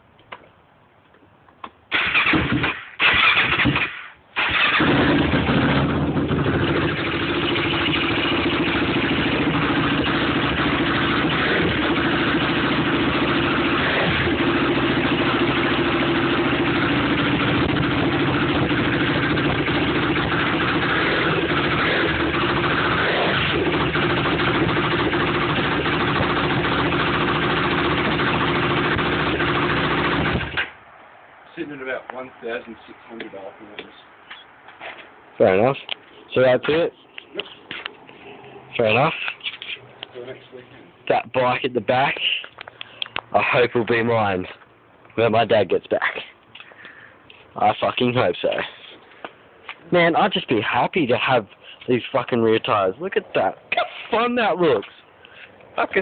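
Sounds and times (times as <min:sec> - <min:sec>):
quad engine starting and idling: 0:01.9 - 0:30.7.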